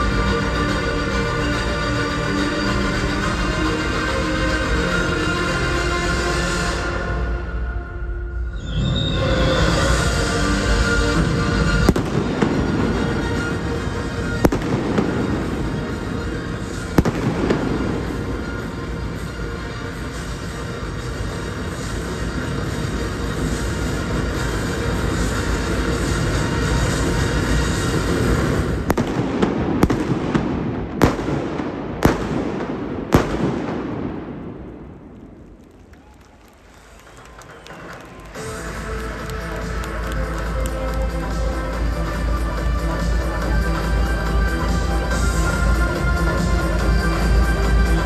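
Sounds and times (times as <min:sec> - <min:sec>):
music playing: 0:00.0 - 0:35.0, 0:37.2 - 0:48.0
steady background noise: 0:00.0 - 0:48.0
fireworks bangs: 0:10.8 - 0:25.7, 0:27.0 - 0:38.7.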